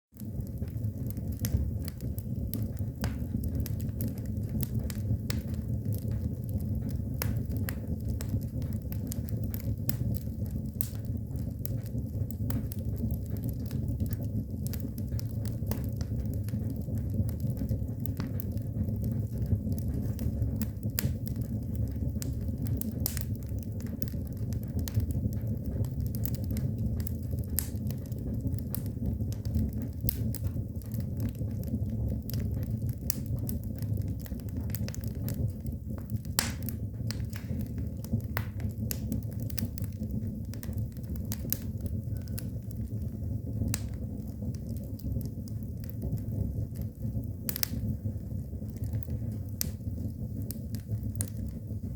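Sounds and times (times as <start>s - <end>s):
fire crackling and popping: 0.1s - 51.9s.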